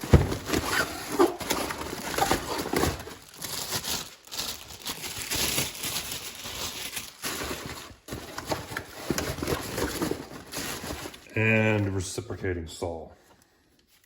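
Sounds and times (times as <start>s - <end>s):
cardboard box rustling and scraping: 0.0s - 3.2s, 7.4s - 11.2s.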